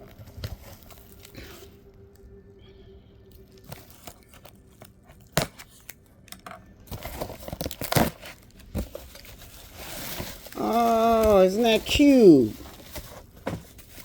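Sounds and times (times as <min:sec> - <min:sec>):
paper tearing and crinkling: 0:00.0 - 0:01.8, 0:06.9 - 0:14.0.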